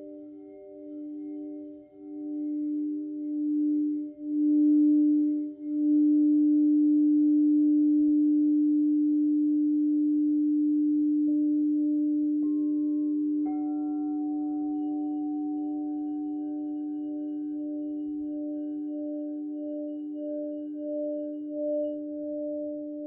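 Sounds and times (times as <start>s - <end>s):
crystal singing bowls humming: 0.0s - 23.0s.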